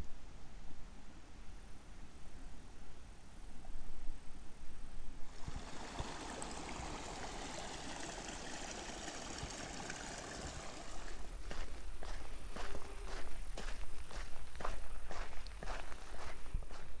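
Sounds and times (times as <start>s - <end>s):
stream water rushing: 5.3s - 11.4s.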